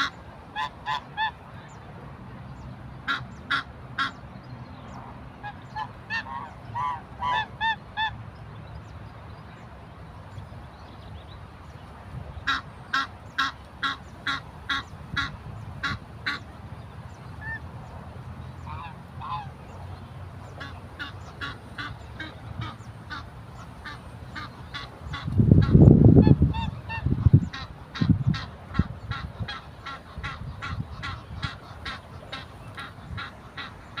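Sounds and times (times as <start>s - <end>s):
geese honking: 0.0s - 1.8s, 3.0s - 4.2s, 5.3s - 8.2s, 12.4s - 16.6s, 17.3s - 17.7s, 18.4s - 34.0s.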